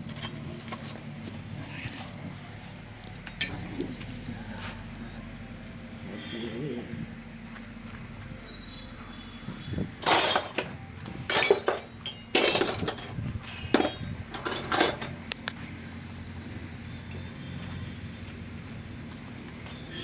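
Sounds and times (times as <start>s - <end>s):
metal tools clinking and clattering: 3.0s - 3.7s, 10.0s - 15.2s.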